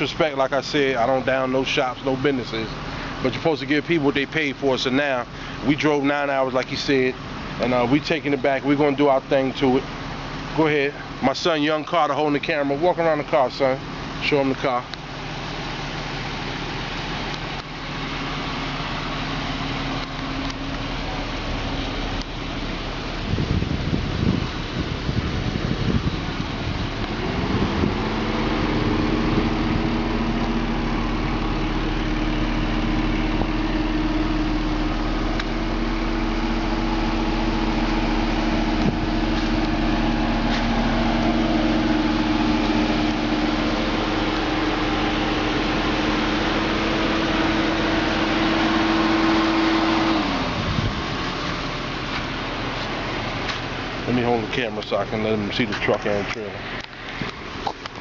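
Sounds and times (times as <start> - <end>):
motor humming: 16.5 - 54.1.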